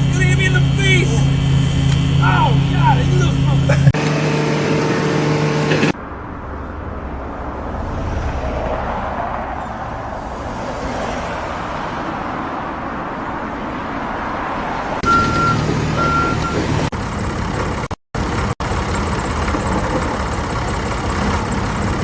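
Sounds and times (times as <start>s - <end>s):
vehicle rumble and hiss: 0.0s - 15.0s
steady machine hum: 4.0s - 6.0s.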